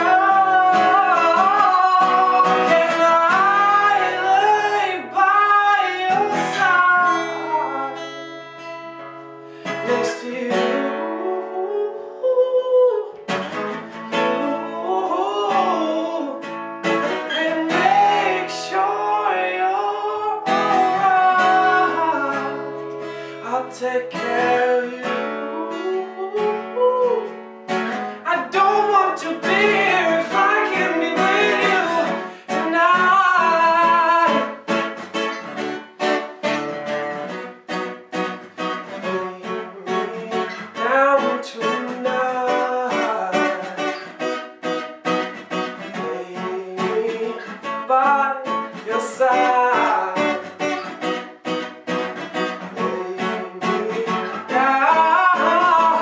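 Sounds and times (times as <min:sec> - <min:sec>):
person singing long notes: 0:00.0 - 0:08.1, 0:09.9 - 0:13.2, 0:14.2 - 0:16.4, 0:17.1 - 0:22.7, 0:23.4 - 0:27.3, 0:28.1 - 0:34.7, 0:52.7 - 0:56.0
strummed acoustic guitar: 0:00.0 - 0:56.0.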